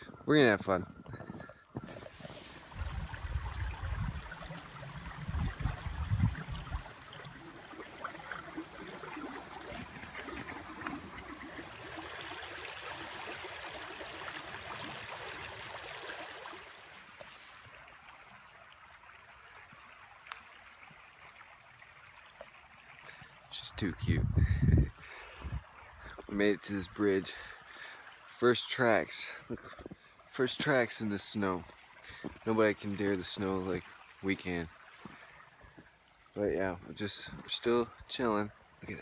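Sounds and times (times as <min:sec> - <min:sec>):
creek water rushing: 0:01.8 - 0:39.0
low rumbling on microphone: 0:02.7 - 0:06.9, 0:23.9 - 0:25.7.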